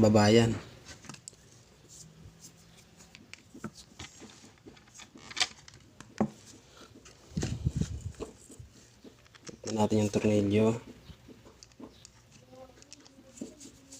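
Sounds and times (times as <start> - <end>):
plastic parts clicking together: 3.1 - 6.2, 8.1 - 9.9, 11.3 - 13.4.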